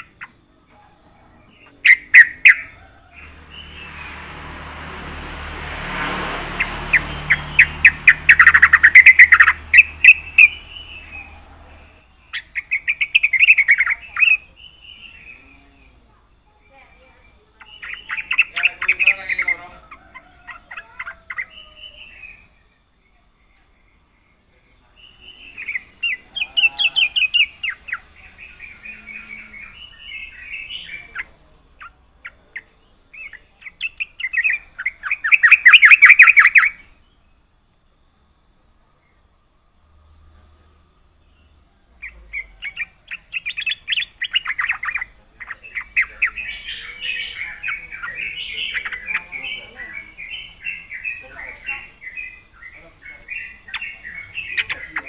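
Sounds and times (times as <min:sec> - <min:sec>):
bird singing chattering phrases: 0:01.5 - 0:04.3, 0:06.9 - 0:16.1, 0:16.7 - 0:22.5, 0:24.9 - 0:36.9, 0:42.0 - 0:55.0.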